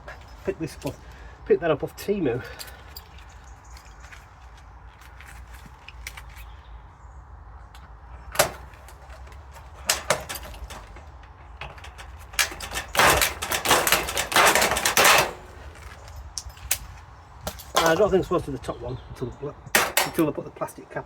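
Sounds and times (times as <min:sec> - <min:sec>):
metallic clicking and clattering: 0:08.3 - 0:18.1, 0:19.7 - 0:20.4.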